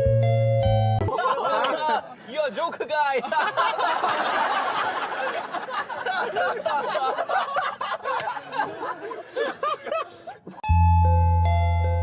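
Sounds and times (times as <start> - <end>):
people laughing and chattering: 1.0 - 10.6.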